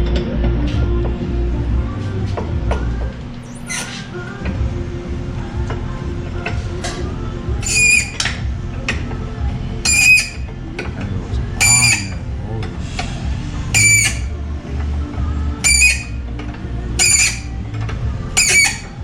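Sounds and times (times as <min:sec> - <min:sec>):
faint background music: 0:00.0 - 0:19.0
short high-pitched squeak: 0:03.4 - 0:04.1, 0:07.6 - 0:08.3, 0:09.8 - 0:10.4, 0:11.6 - 0:12.2, 0:13.8 - 0:14.3, 0:15.6 - 0:16.2, 0:17.0 - 0:17.5, 0:18.4 - 0:19.0.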